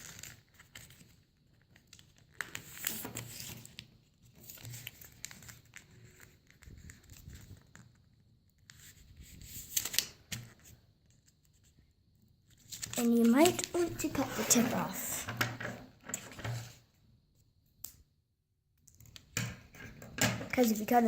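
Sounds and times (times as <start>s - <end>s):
paper crinkling and rustling: 0.0s - 11.8s, 12.5s - 15.3s.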